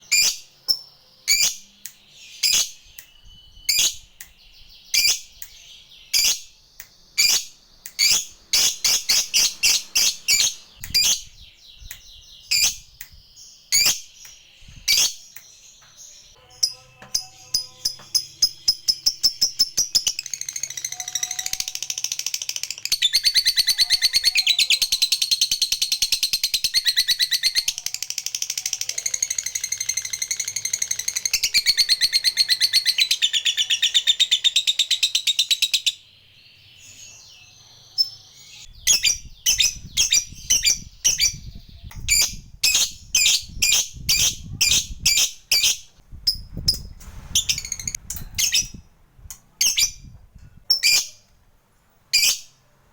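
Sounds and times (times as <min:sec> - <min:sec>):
bird sharp chirps: 0:00.0 - 0:24.7
lovebird chattering trill: 0:07.2 - 0:11.4, 0:16.6 - 0:36.0.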